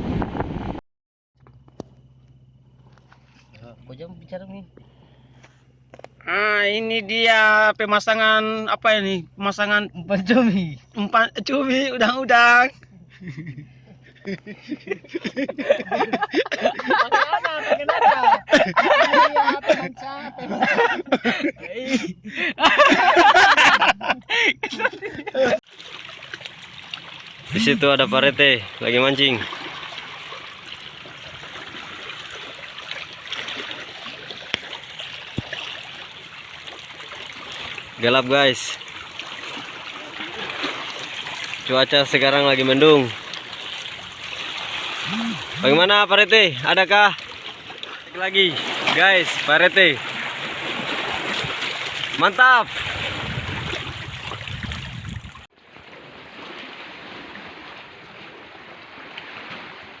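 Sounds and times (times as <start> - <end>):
sea water lapping and splashing: 25.6 - 60.0.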